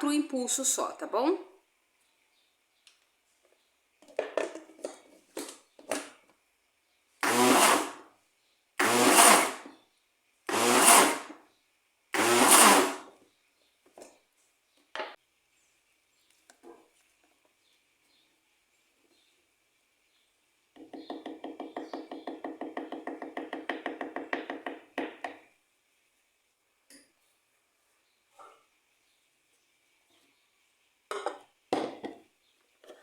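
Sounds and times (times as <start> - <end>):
blender motor pulsing: 7.2 - 8.0, 8.8 - 9.7, 10.5 - 11.4, 12.2 - 13.1.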